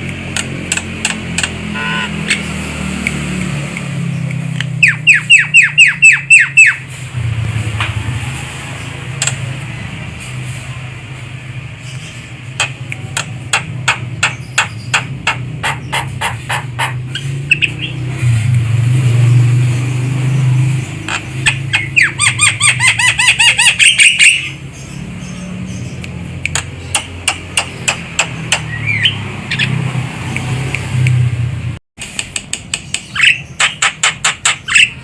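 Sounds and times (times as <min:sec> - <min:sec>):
myna calling: 0:01.6 - 0:02.5.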